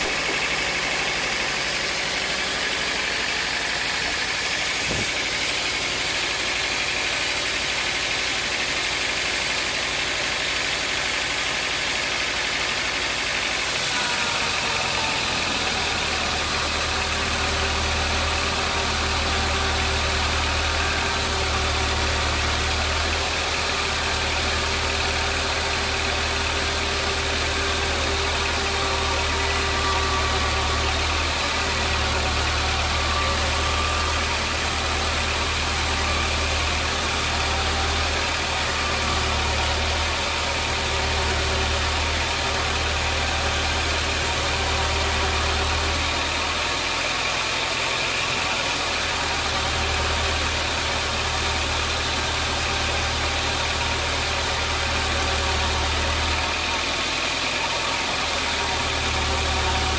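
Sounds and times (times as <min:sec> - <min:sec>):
sawmill machinery humming: 0:00.0 - 0:59.9.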